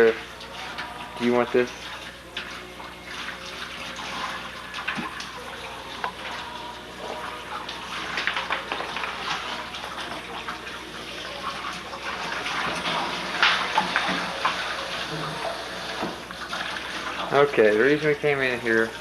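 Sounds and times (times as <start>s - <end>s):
tap water running into bathtub: 0.0s - 19.0s.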